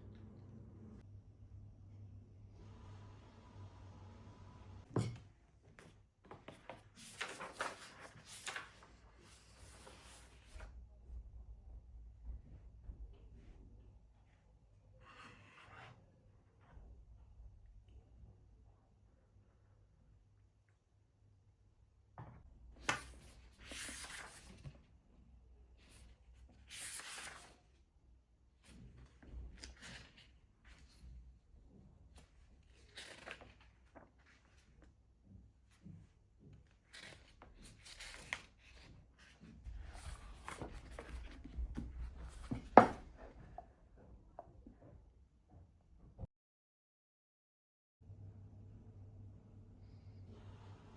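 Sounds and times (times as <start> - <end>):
household objects rustling and knocking: 40.4 - 43.4.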